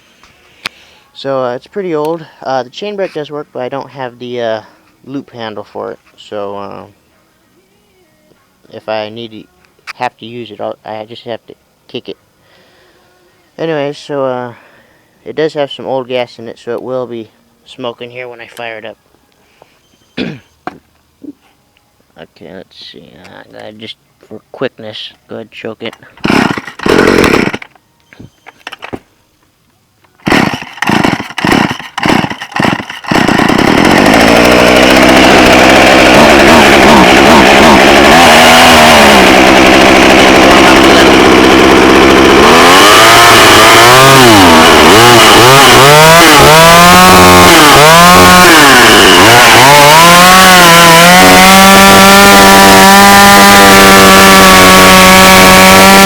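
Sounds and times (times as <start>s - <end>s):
chainsaw starter pulls: 25.9s - 27.8s, 30.1s - 56.0s
chainsaw engine revving: 26.1s - 27.8s, 30.1s - 56.0s.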